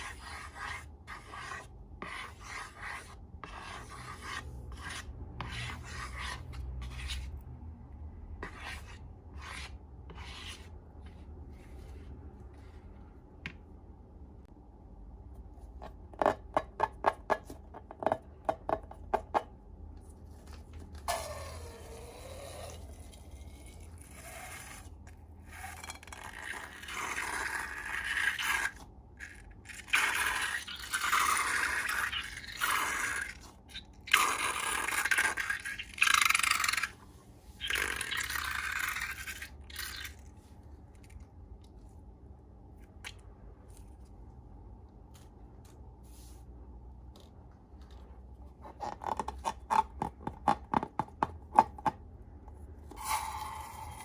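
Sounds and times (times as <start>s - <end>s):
slime scraping and rubbing: 0.0s - 7.4s, 8.4s - 12.3s.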